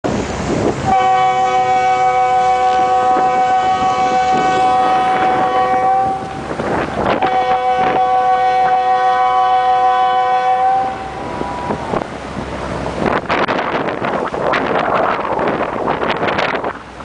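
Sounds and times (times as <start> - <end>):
wind and water noise: 0.0 - 17.0
boat horn blast: 0.8 - 6.5, 7.1 - 12.0.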